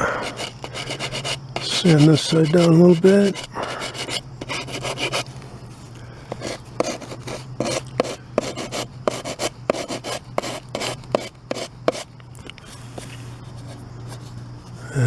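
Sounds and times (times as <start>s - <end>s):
sandpaper sanding wood: 0.1s - 5.2s, 6.4s - 12.0s.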